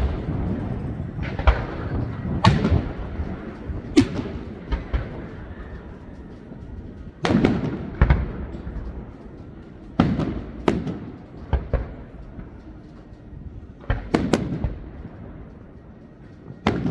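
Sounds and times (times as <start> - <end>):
fireworks bangs with rumbling echo: 0.0 - 13.1, 13.8 - 15.7, 16.5 - 16.9.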